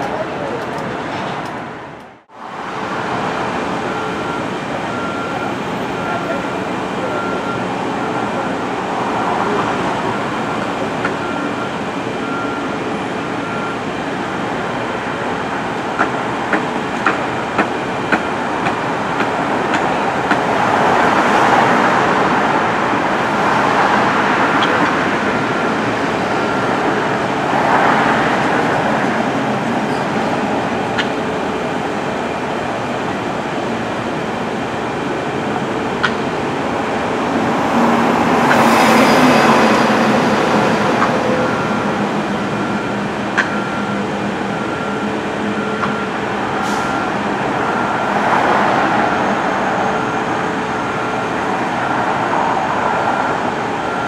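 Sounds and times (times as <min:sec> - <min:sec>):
train rumbling and rattling: 0:15.4 - 0:44.5.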